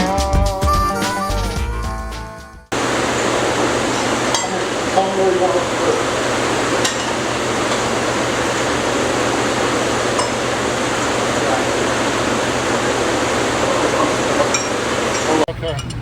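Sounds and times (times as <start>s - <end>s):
low hum: 2.7s - 15.5s
steady rushing noise: 2.7s - 15.5s.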